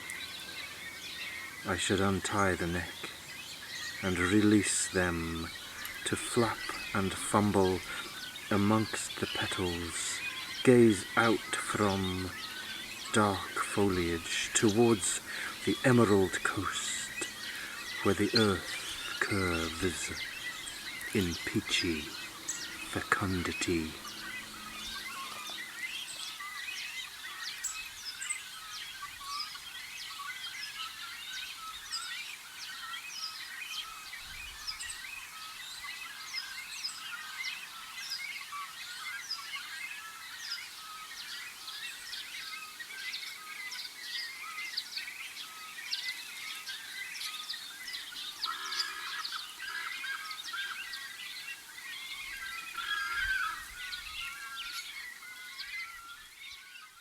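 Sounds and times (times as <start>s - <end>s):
harsh bird call: 0.0s - 28.7s, 48.1s - 57.0s
chorus of birds chirping: 0.0s - 57.0s.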